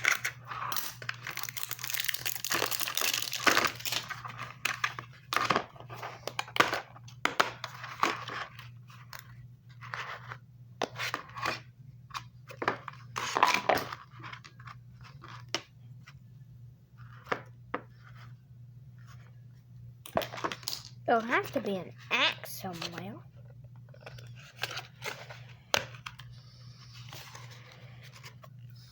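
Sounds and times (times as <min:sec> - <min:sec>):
packaging crinkling and tearing: 0:00.0 - 0:05.5.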